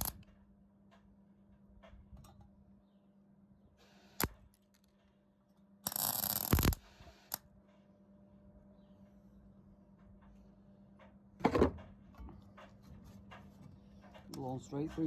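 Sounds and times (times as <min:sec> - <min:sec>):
sharp clicks: 0:05.9 - 0:06.8.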